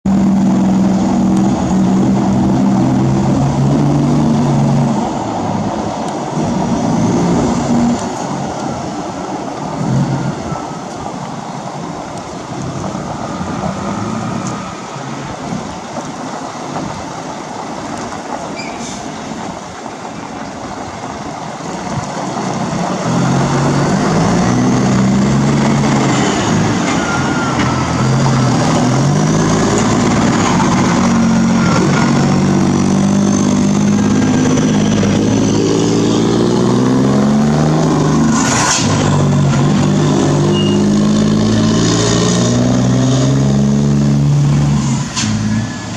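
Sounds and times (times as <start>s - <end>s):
truck diesel engine revving: 0.0s - 8.9s, 21.6s - 45.9s.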